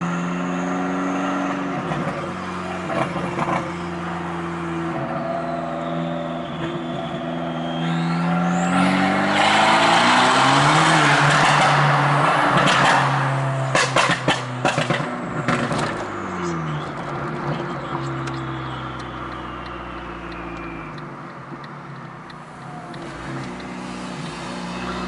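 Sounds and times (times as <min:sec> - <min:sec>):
turbo car engine: 0:00.0 - 0:25.0
turbo whistle: 0:05.0 - 0:09.0, 0:18.4 - 0:21.0.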